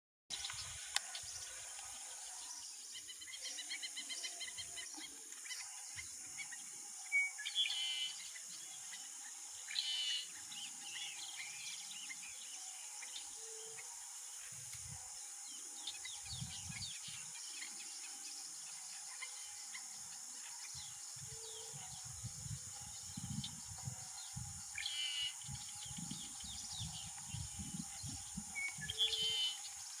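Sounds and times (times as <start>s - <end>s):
high-pitched insect drone: 0.5s - 30.0s
bird chirps: 15.6s - 30.0s.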